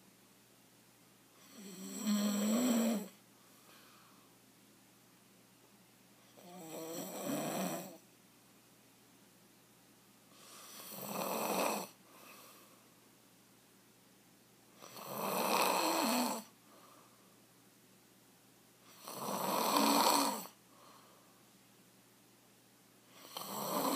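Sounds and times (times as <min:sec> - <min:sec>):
man snoring loudly: 0:01.4 - 0:03.2, 0:06.4 - 0:08.0, 0:10.7 - 0:12.0, 0:14.8 - 0:16.5, 0:18.9 - 0:20.6, 0:23.2 - 0:23.9.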